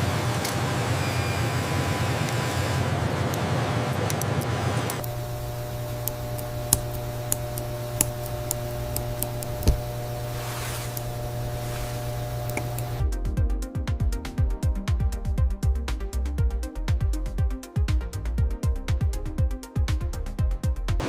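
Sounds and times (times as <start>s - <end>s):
low machine hum: 0.0s - 13.1s
small sharp clicks: 4.9s - 10.3s, 10.9s - 13.0s.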